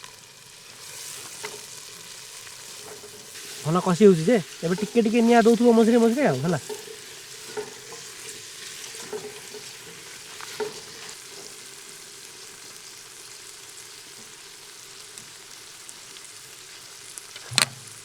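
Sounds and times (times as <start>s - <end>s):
spices sizzling in a pan: 0.0s - 18.0s
stirring knocks: 1.2s - 11.6s.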